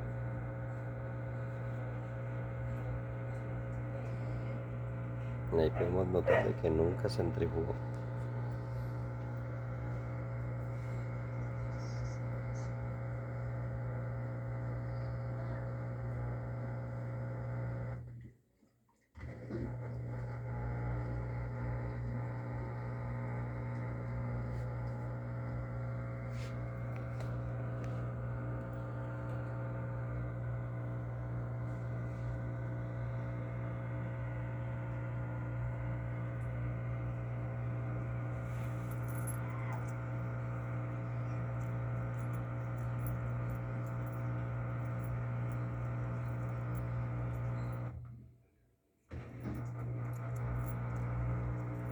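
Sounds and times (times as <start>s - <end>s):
washing machine humming: 0.0s - 18.2s, 19.2s - 48.1s, 49.1s - 51.9s.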